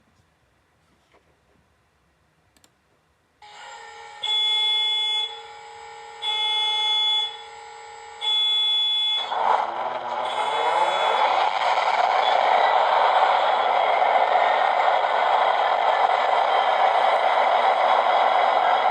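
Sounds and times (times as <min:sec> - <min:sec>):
electronic alarm tone beeping: 0:06.2 - 0:07.5, 0:08.2 - 0:09.3
rushing noise: 0:09.3 - 0:18.9.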